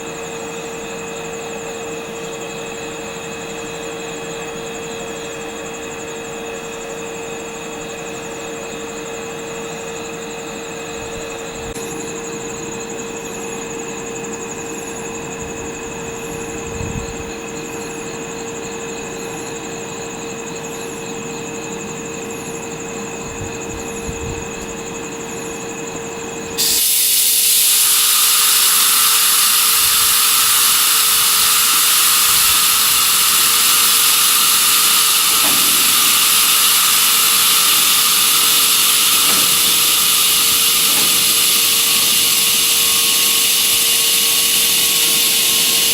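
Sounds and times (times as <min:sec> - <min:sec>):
electric locomotive hum: 0:00.0 - 0:45.9
loud air hiss: 0:26.6 - 0:45.9.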